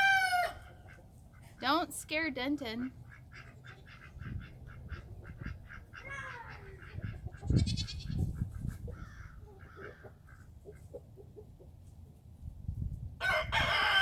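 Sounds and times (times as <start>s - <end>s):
chicken squawk: 0.0s - 1.5s, 3.1s - 11.4s
chickens clucking: 0.0s - 2.2s, 3.0s - 12.2s.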